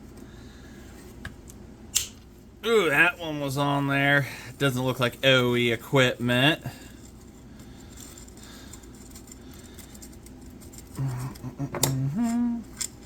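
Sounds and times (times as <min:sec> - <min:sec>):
wordless vocal hum: 0:11.0 - 0:12.8.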